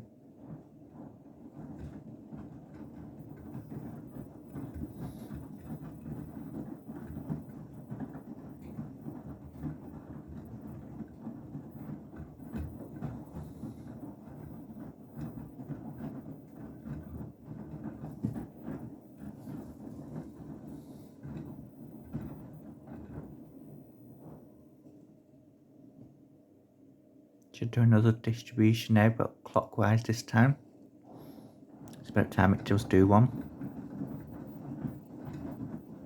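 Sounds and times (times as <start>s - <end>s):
washing machine drum sloshing: 0.0s - 24.9s, 27.7s - 36.0s.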